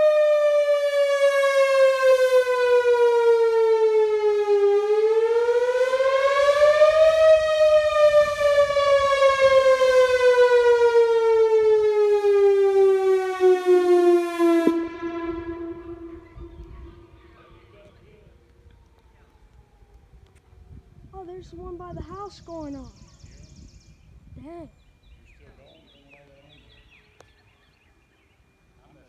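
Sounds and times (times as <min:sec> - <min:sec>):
warning siren wailing: 0:00.0 - 0:23.4
faint low tone: 0:15.6 - 0:19.8.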